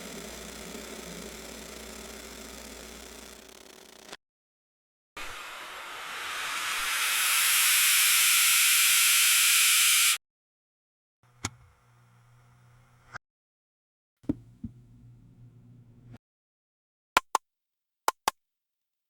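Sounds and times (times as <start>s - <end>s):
rush of hissing noise: 5.2s - 10.0s.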